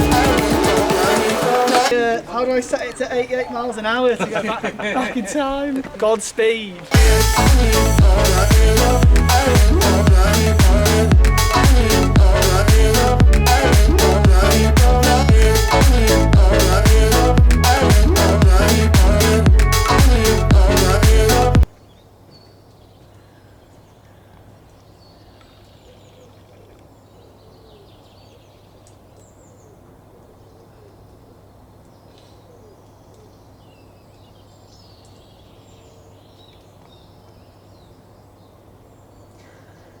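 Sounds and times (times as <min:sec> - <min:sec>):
steady low hum: 0:07.0 - 0:21.7.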